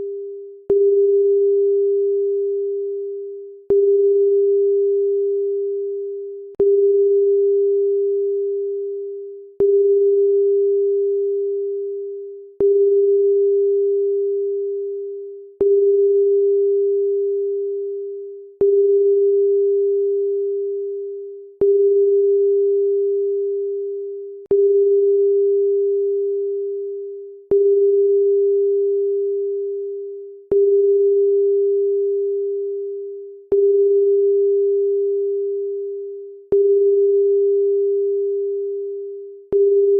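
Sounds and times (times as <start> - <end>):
electronic pure tone with click: 5.9 - 39.9.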